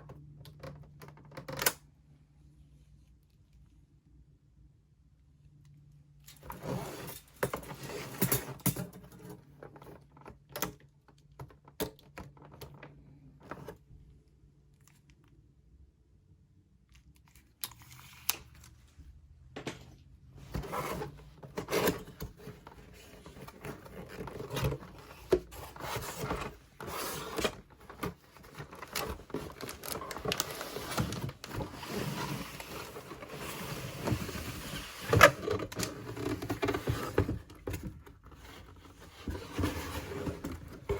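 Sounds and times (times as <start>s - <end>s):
packaging handling clicks and knocks: 20.5s - 31.9s.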